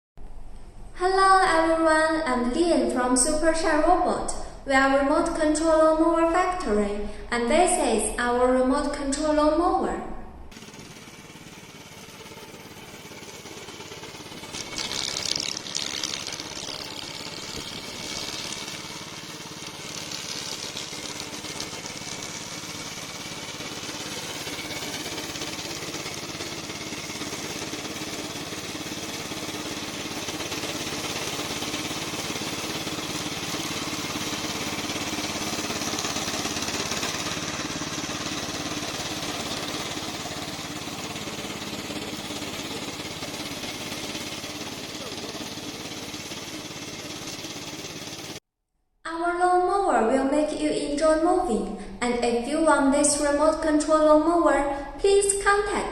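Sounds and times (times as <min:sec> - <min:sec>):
robotic lawn mower running: 0:10.5 - 0:48.4.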